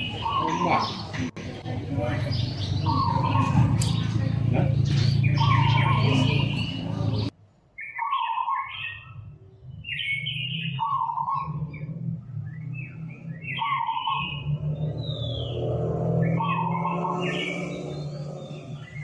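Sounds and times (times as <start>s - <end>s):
steady low hum: 0.0s - 7.3s.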